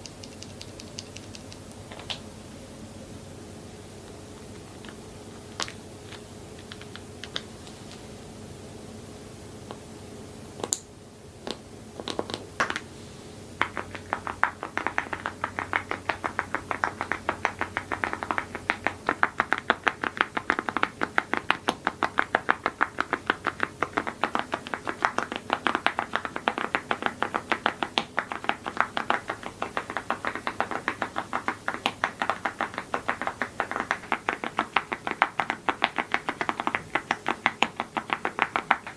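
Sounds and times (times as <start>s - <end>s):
mechanical keyboard typing: 0.0s - 1.8s.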